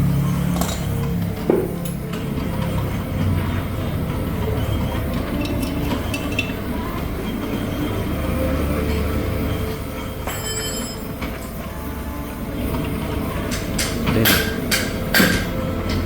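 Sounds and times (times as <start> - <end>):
low machine hum and rumble: 0.0 - 10.4
high metallic ringing: 5.2 - 7.9, 10.0 - 11.2
metal clinks: 5.3 - 6.7.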